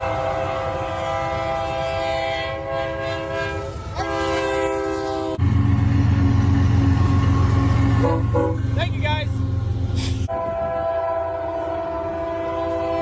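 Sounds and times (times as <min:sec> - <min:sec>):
locomotive air horn chord: 0:00.0 - 0:05.4, 0:07.3 - 0:09.0, 0:10.0 - 0:13.0.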